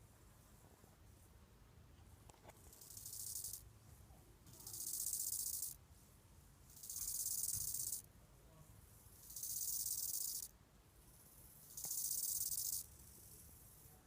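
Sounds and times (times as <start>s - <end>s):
grasshopper buzzing: 2.7s - 3.6s, 4.6s - 5.8s, 6.7s - 8.0s, 9.2s - 10.5s, 11.7s - 13.3s.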